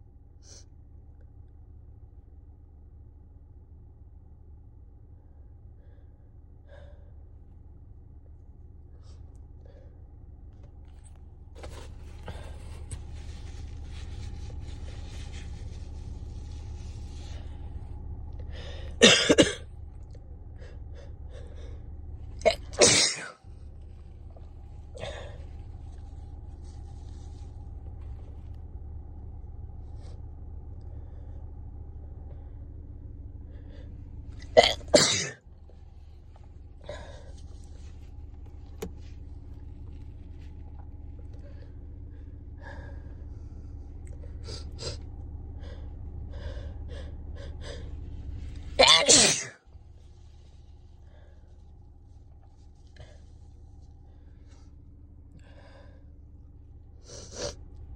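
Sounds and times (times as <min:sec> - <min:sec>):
low hum: 0:00.0 - 0:57.9
sniffles and breaths: 0:11.0 - 0:17.8, 0:20.5 - 0:28.4, 0:36.1 - 0:49.5, 0:57.0 - 0:57.7
person sneezing: 0:19.0 - 0:19.6, 0:22.5 - 0:23.4, 0:34.4 - 0:35.4, 0:48.8 - 0:49.6.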